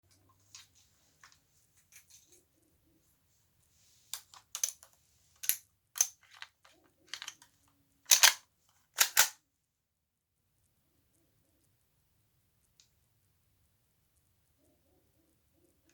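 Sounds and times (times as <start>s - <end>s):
pistol magazine and slide clicks: 8.1s - 8.4s, 9.0s - 9.4s.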